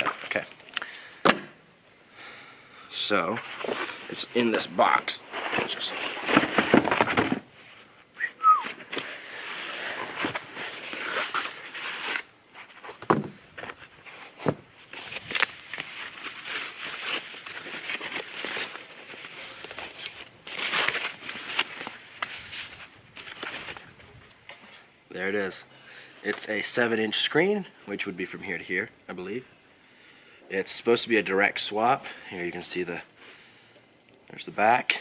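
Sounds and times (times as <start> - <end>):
cardboard packaging rustling: 3.3 - 7.9, 8.5 - 24.5.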